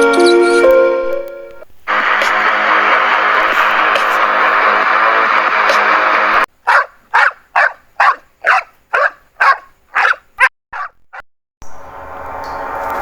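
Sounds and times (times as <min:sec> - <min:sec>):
background music: 0:00.0 - 0:06.4
dog barking rapidly: 0:06.6 - 0:11.2.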